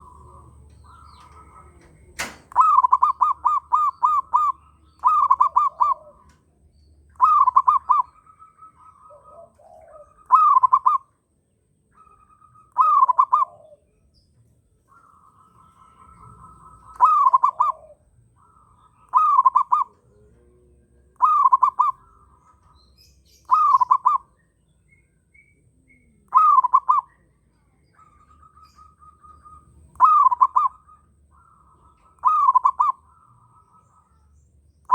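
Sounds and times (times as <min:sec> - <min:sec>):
dove cooing: 0:00.0 - 0:11.3, 0:11.9 - 0:34.9
sharp click: 0:01.8 - 0:02.6.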